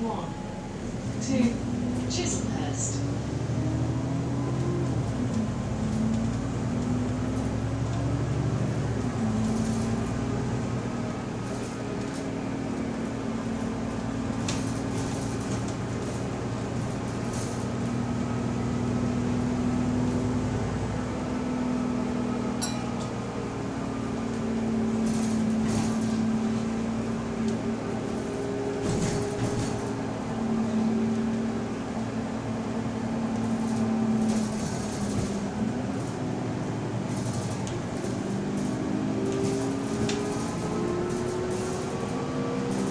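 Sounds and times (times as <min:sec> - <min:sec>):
bus engine droning: 0:00.0 - 0:42.9
light body rattles: 0:28.0 - 0:30.2, 0:33.4 - 0:42.9.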